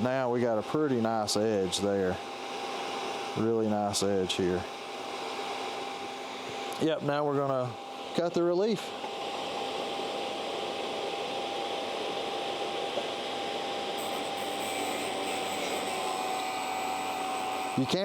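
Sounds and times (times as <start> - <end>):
small electric motor humming: 9.7 - 18.0
high grinding hiss: 14.0 - 18.0.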